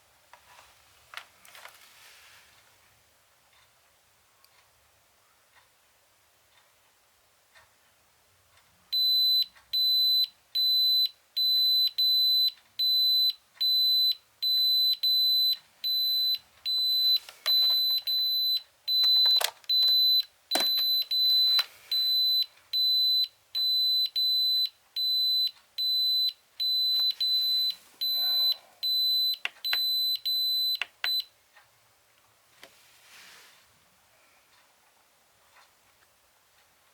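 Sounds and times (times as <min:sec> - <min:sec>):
high-pitched alarm beeping: 0:09.0 - 0:31.2
clicks: 0:29.3 - 0:29.9.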